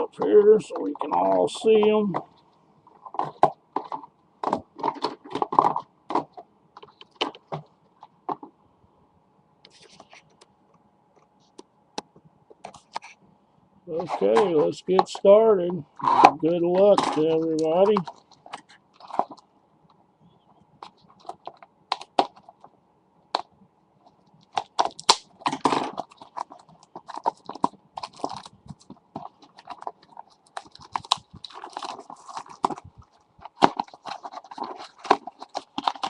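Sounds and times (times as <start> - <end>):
card pack wrapper crinkling: 24.0 - 36.0.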